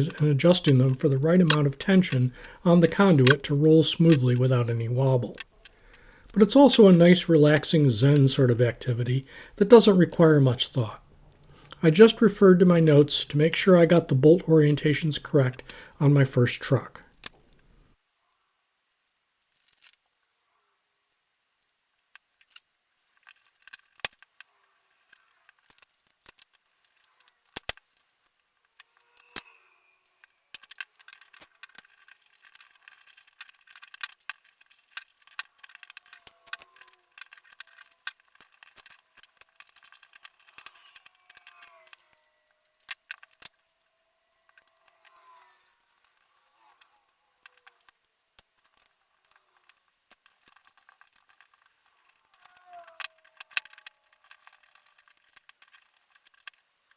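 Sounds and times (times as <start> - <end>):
bolts and nuts clinking: 0.0 - 17.7
faint squeaks: 28.1 - 56.9.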